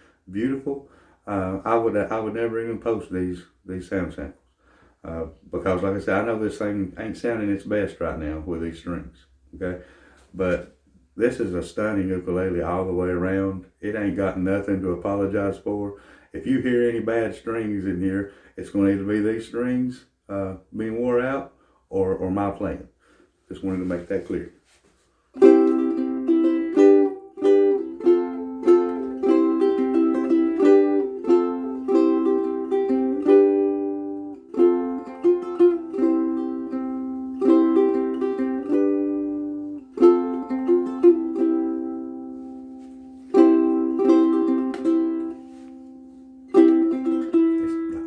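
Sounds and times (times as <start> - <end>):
ukulele plucked tune: 25.4 - 48.0.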